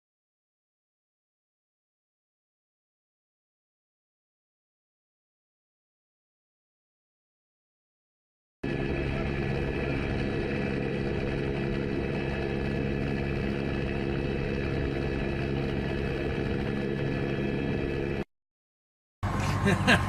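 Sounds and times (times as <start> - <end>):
engine drone: 8.6 - 18.3, 19.2 - 20.0.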